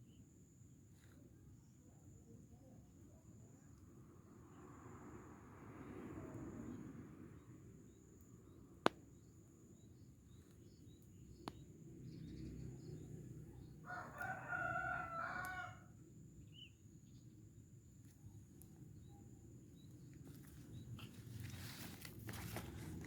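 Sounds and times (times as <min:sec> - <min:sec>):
rooster crowing: 0:13.8 - 0:16.0.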